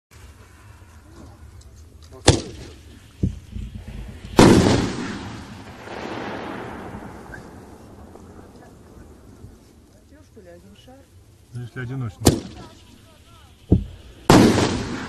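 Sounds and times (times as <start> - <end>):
firework launch bang: 2.2 - 9.6, 12.2 - 12.8, 13.7 - 15.0
firework shell bursting: 2.2 - 9.8, 12.2 - 15.0.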